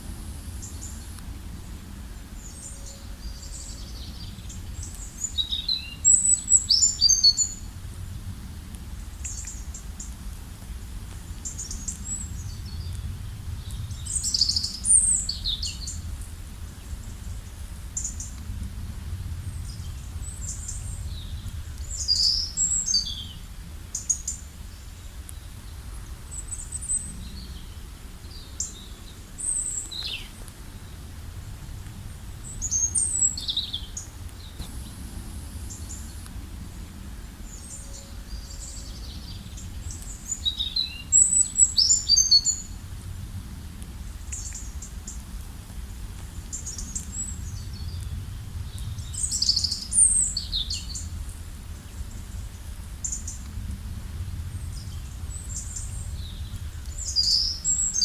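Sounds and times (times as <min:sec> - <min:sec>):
songbirds chirping and trilling: 0:00.0 - 0:07.8, 0:11.3 - 0:18.5, 0:19.4 - 0:42.8, 0:54.2 - 0:58.0.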